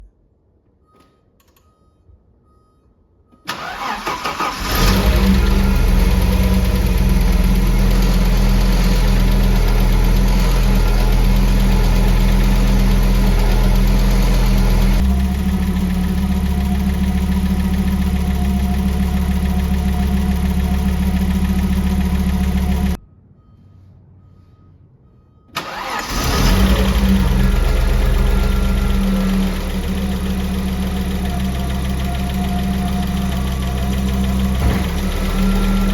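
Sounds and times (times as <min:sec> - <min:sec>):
car engine starting and idling: 0:03.4 - 0:23.0, 0:25.4 - 0:35.9
engine lifter ticking: 0:03.6 - 0:23.0.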